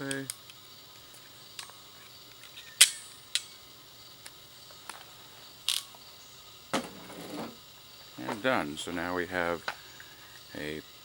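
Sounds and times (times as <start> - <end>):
wire crimper clicks and snaps: 0.0 - 0.6.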